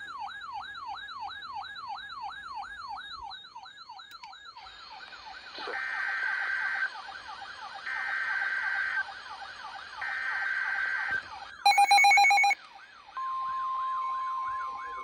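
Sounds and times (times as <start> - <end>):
warbling alert siren: 10.0 - 12.6
digital data tones: 11.7 - 12.6
electronic beep: 11.7 - 12.6
steady warning alarm tone: 11.7 - 12.6.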